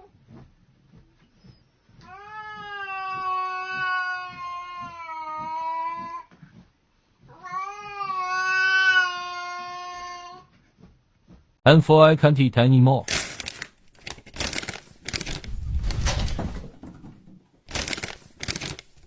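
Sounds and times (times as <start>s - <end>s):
cat meowing: 7.3s - 10.4s.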